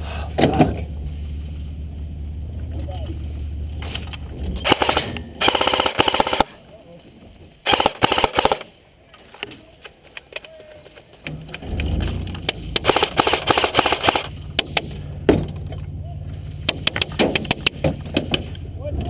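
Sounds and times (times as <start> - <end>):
vehicle engine droning: 0.0 - 19.0
airsoft guns firing: 4.6 - 6.6, 7.6 - 8.8, 12.7 - 15.0.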